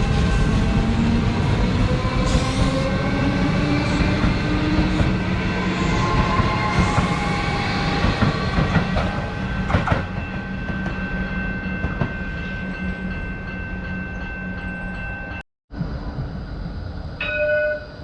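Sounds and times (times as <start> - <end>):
electric train rumbling: 0.0 - 18.0.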